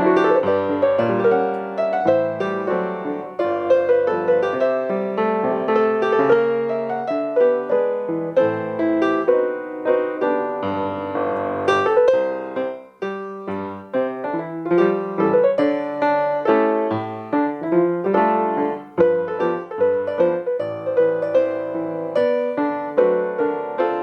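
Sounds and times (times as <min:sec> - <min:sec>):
solo piano playing: 0:00.0 - 0:24.0.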